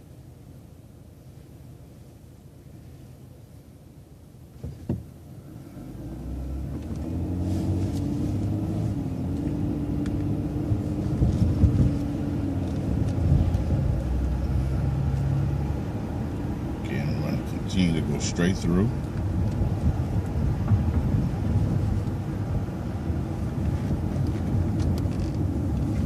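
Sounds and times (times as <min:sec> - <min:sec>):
bus engine pulling away: 0:05.5 - 0:26.0.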